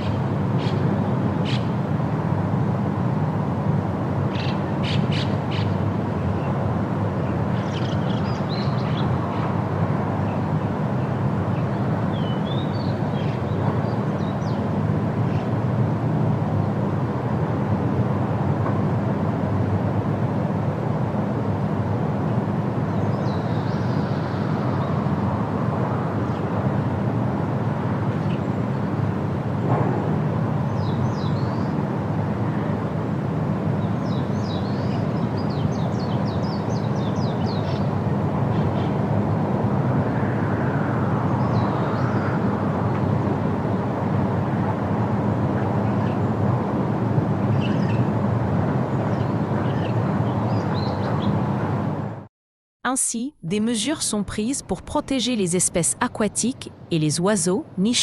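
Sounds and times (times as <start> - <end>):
small birds chirping: 4.3 - 6.6, 7.2 - 9.6, 10.2 - 15.6, 22.8 - 25.2, 30.6 - 31.8, 33.8 - 39.0, 47.5 - 48.1, 48.9 - 51.4.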